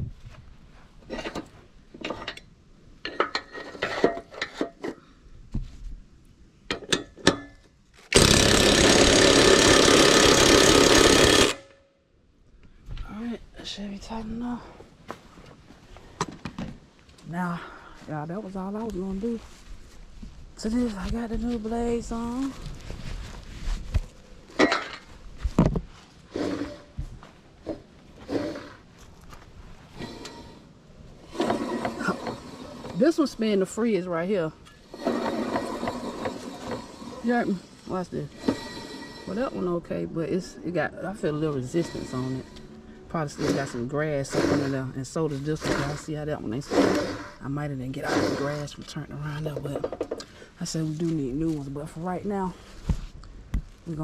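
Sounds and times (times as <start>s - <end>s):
tools scraping and clanking on metal: 1.0s - 5.2s, 24.5s - 25.2s, 26.2s - 27.0s, 27.6s - 28.9s, 29.8s - 33.4s, 34.6s - 40.0s, 41.2s - 48.9s
power tool running: 8.1s - 11.7s, 31.3s - 33.0s, 34.8s - 39.6s, 41.4s - 44.8s, 45.6s - 47.4s, 48.1s - 48.7s.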